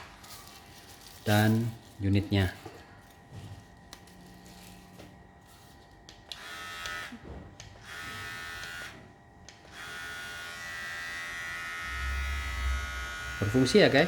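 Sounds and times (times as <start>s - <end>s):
electric hair clipper buzzing: 6.2s - 14.0s.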